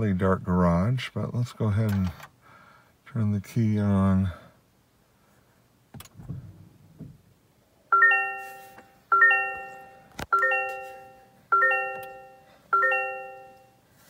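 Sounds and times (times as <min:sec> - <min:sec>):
car warning chime: 0:07.9 - 0:13.9.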